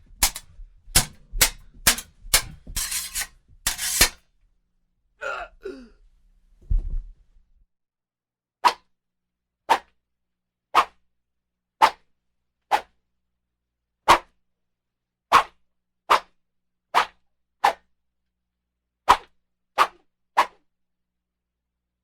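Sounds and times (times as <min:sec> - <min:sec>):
sword blades clashing: 0:00.2 - 0:04.2.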